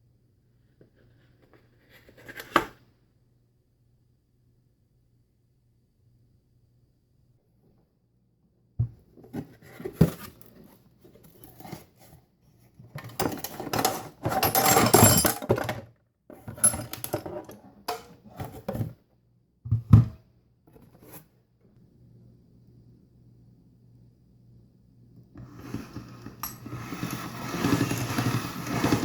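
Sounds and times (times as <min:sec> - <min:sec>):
scraping and rustling: 0:09.2 - 0:19.0, 0:25.7 - 0:29.0.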